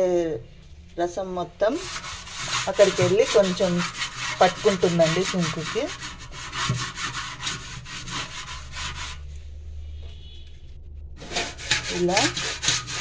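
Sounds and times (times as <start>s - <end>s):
lemon scrubbing steel sink: 1.7s - 9.2s, 11.2s - 13.0s.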